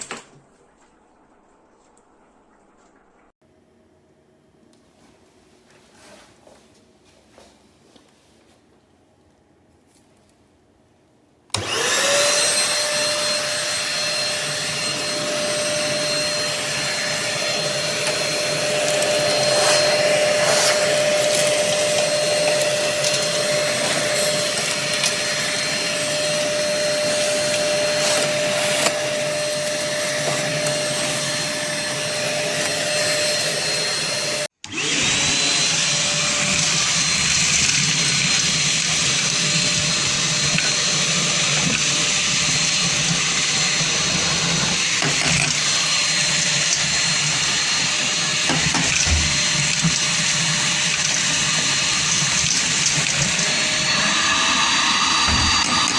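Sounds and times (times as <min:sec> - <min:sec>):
vacuum cleaner motor whine: 0:11.5 - 0:55.9.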